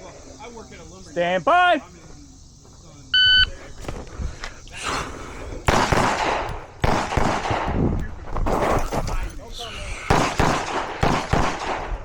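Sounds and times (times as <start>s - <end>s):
rapid pistol shots: 5.7s - 8.7s, 10.1s - 12.0s.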